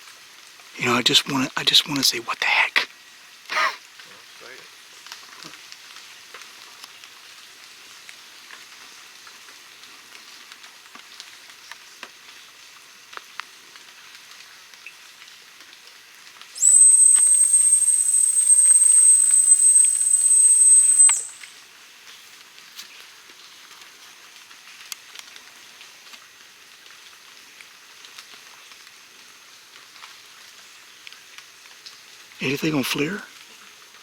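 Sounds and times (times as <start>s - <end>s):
light rain pattering on foliage: 0.0s - 17.1s, 20.7s - 34.0s
dog whistle high note: 16.6s - 21.5s.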